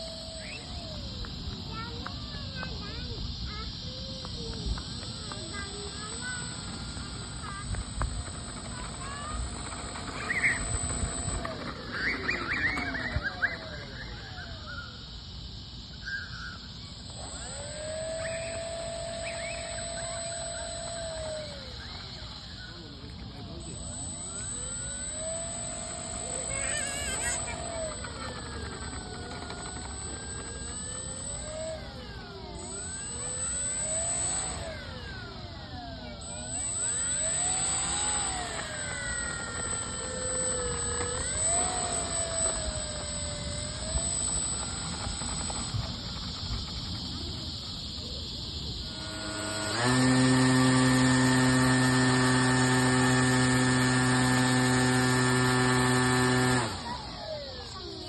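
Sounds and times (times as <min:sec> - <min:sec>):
model airplane motor whining: 0:00.0 - 0:58.0.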